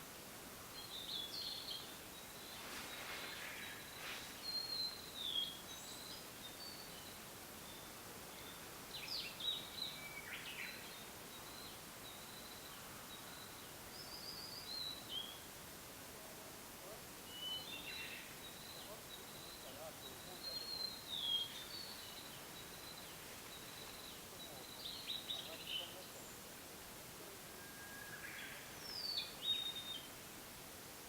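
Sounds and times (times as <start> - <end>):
bird singing high whistles: 27.6 - 29.9.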